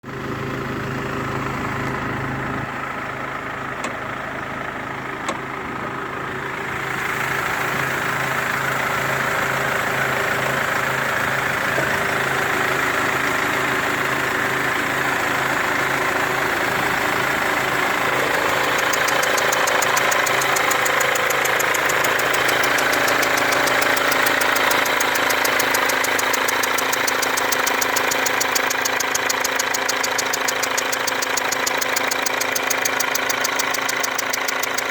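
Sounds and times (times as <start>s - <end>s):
diesel engine idling: 0.0s - 34.9s
rapid ticking: 15.0s - 34.9s.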